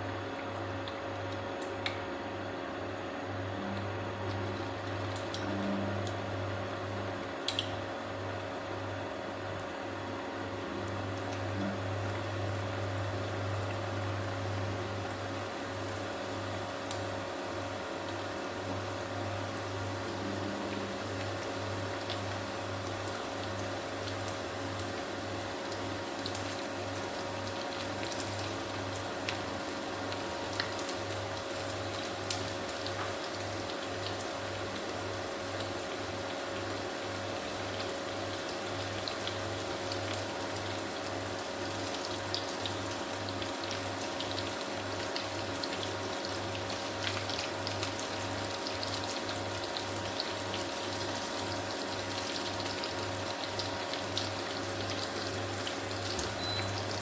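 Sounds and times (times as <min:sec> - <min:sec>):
low steady hum: 0:03.2 - 0:07.7
food sizzling in hot oil: 0:20.9 - 0:57.0.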